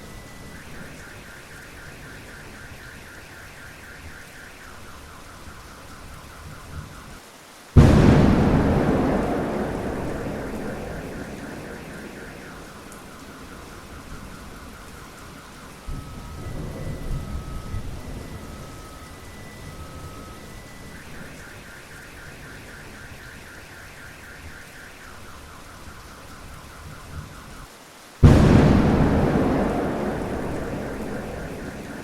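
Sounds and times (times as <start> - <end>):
steady rain: 0.0 - 32.0
loud thunder crack: 7.8 - 15.0, 28.2 - 32.0
thunder rumbling: 7.8 - 19.0, 28.2 - 32.0.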